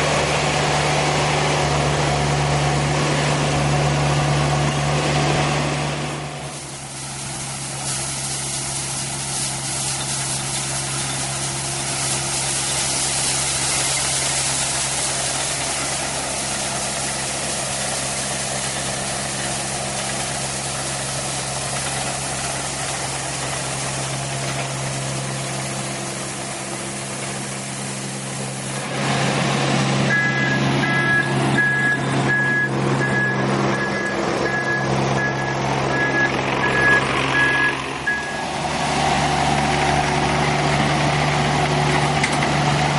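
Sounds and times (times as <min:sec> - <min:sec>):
diesel engine running: 0:00.0 - 0:42.9
reversing alarm beeping: 0:30.1 - 0:38.5.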